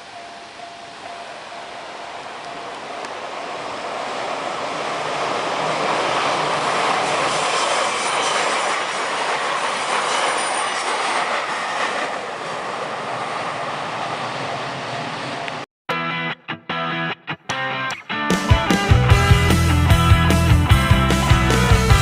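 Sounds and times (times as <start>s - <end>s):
train wheels rumbling on rail: 0.0s - 15.6s.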